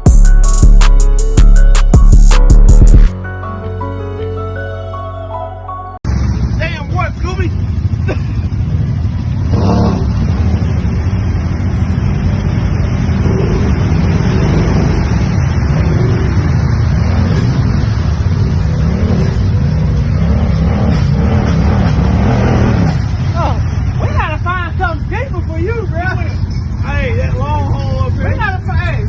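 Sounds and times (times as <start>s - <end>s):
atv engine revving: 6.1s - 28.6s.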